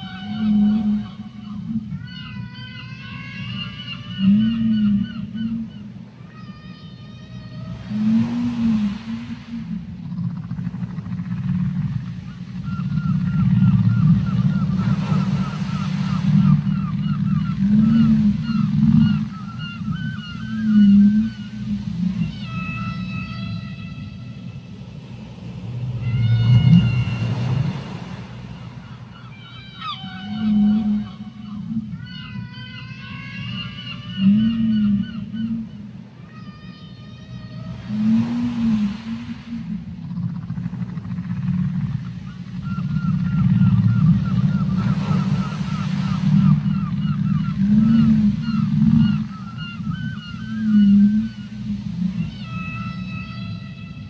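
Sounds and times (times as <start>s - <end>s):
low rumble of deep water: 0.0s - 54.0s
whale call underwater: 0.0s - 54.0s.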